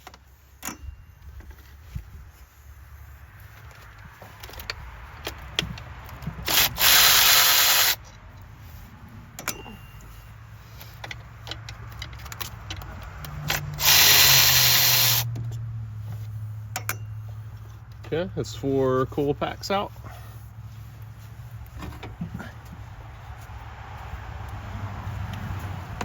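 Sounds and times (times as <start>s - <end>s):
tools clicking and knocking: 3.8s - 8.5s, 9.4s - 10.1s, 10.8s - 15.6s, 16.7s - 18.1s
cordless ratchet running: 6.4s - 8.0s, 13.4s - 15.3s.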